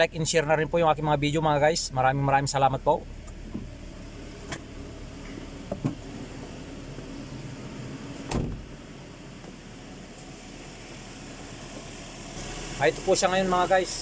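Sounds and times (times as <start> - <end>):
car engine running: 0.0 - 14.0
thump: 5.7 - 6.0, 8.3 - 8.7.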